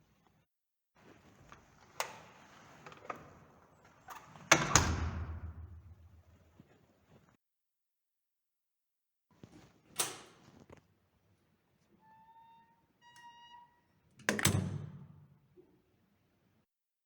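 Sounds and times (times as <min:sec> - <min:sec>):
door hinges creaking: 0:12.0 - 0:14.8.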